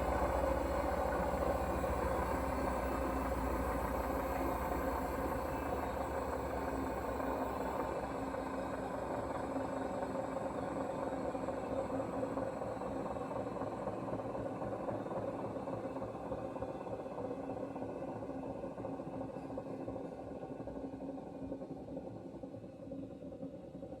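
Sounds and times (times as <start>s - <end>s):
washing machine humming and rattling: 0.0s - 12.4s.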